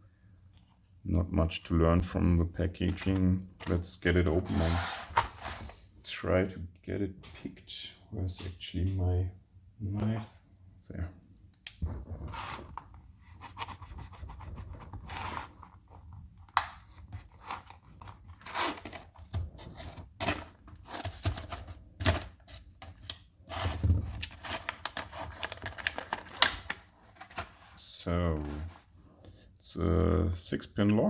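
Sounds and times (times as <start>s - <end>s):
packaging tearing: 24.3s - 26.8s.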